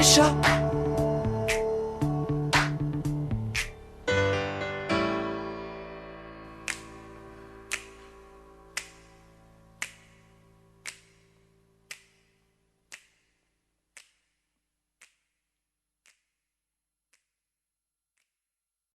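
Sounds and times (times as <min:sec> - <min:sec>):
faint finger snaps: 0:01.4 - 0:01.8, 0:02.5 - 0:03.8, 0:06.6 - 0:15.4, 0:16.0 - 0:16.4.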